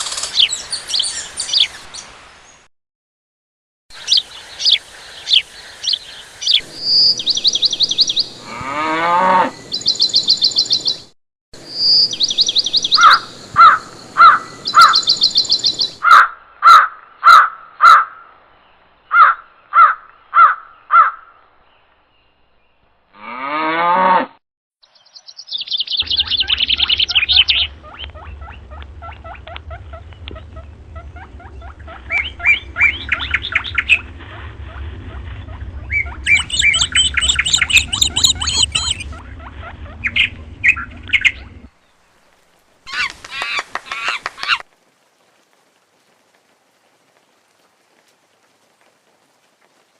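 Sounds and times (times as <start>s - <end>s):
bird calls and chirps: 0.0s - 2.7s, 3.9s - 8.4s, 9.5s - 11.1s, 11.7s - 16.1s, 24.8s - 42.1s, 42.9s - 44.6s
low steady hum: 26.0s - 42.8s.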